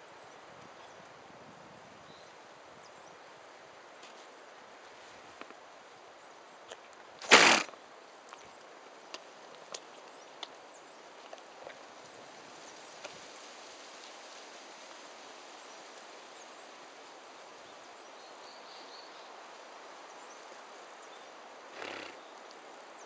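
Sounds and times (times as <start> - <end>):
faint outdoor hiss: 0.0 - 23.0
horse sneezing: 7.2 - 7.7, 21.8 - 22.2.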